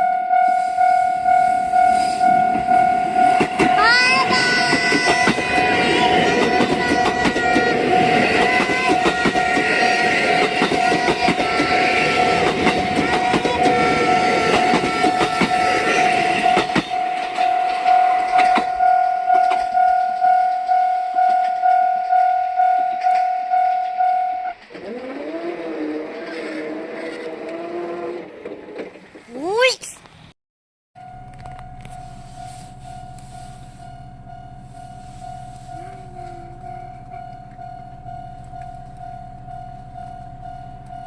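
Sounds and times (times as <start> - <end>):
level-crossing alarm dinging: 0.0 - 25.7, 31.0 - 41.0
train running: 0.5 - 29.3, 31.0 - 41.0
low rising whine: 31.0 - 41.0.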